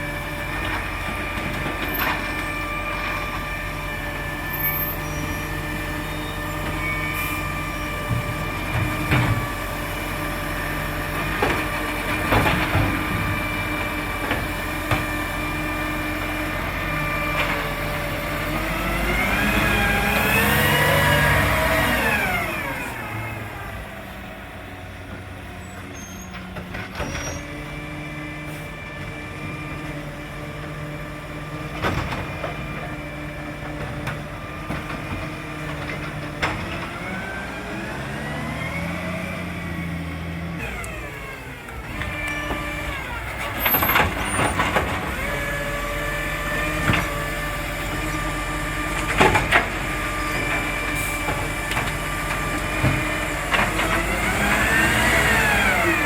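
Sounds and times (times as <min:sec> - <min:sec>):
diesel engine revving: 0:00.0 - 0:56.0.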